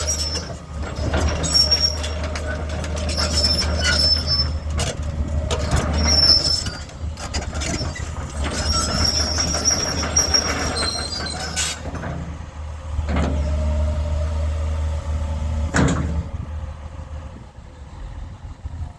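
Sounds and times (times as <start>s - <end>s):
high squeals: 0.0s - 5.0s, 5.6s - 7.0s, 7.7s - 11.8s
diesel engine drone: 0.0s - 18.9s.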